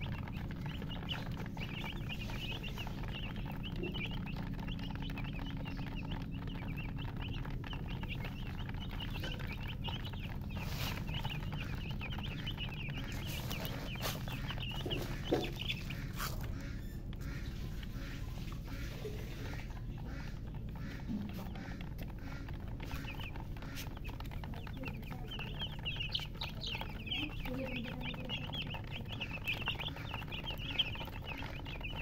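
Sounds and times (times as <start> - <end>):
baby chicks peeping: 0.0 - 32.0.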